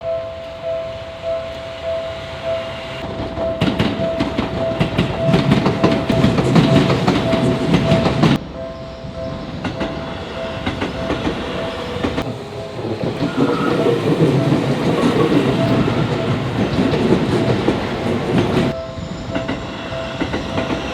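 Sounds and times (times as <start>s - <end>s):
crossing bell ringing: 0.0s - 20.9s
train wheels clattering over joints: 3.1s - 8.4s, 9.6s - 18.8s.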